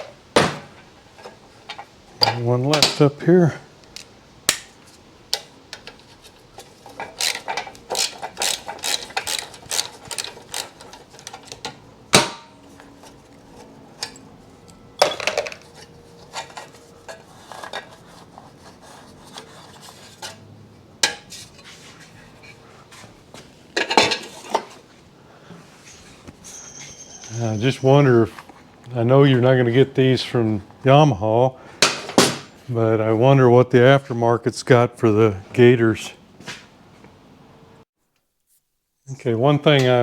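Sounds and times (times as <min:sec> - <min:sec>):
metal tools clinking and knocking: 0:05.7 - 0:17.9, 0:23.8 - 0:24.8.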